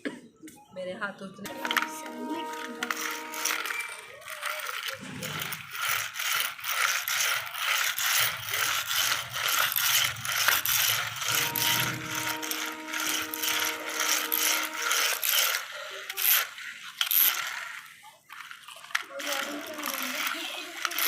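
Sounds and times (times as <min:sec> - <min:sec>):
plastic toys clicking and rattling: 0:01.5 - 0:21.0
electronic tone: 0:11.2 - 0:15.2.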